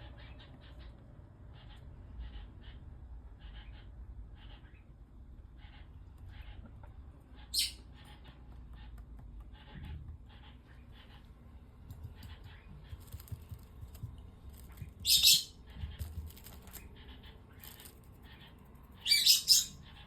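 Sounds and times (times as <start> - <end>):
bird feet clicking: 11.8 - 17.0
cockatiel squawking: 15.0 - 15.5, 16.7 - 20.0.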